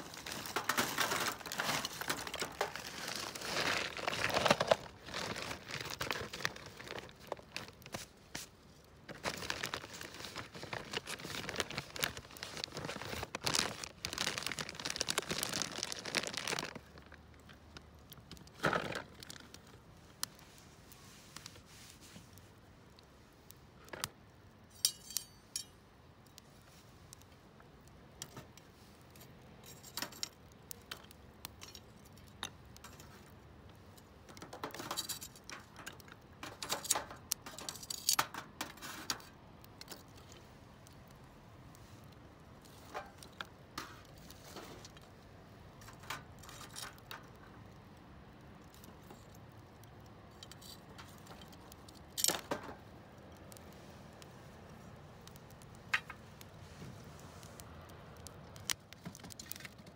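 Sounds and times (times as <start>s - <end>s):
rustling and crinkling: 0.0s - 59.9s
clinks of small metal or glass items: 24.7s - 25.8s, 29.1s - 33.2s, 34.4s - 38.8s.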